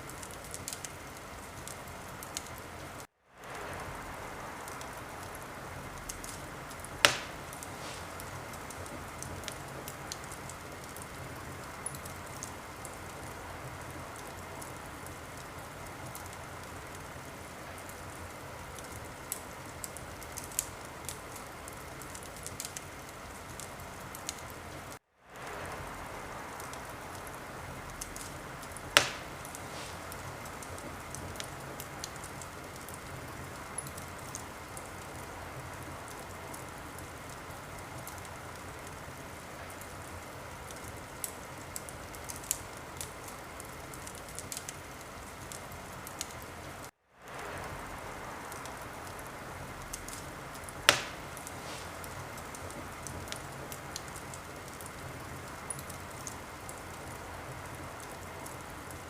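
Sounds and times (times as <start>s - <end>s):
wood fire crackling: 0.0s - 59.0s
sharp loud pops: 7.0s - 8.2s, 29.0s - 30.1s, 50.9s - 52.0s.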